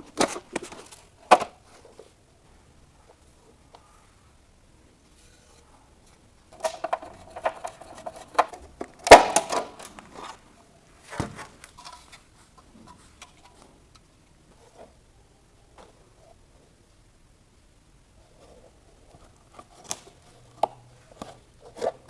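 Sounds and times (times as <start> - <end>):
hard objects clicking and rattling: 6.5 - 10.4.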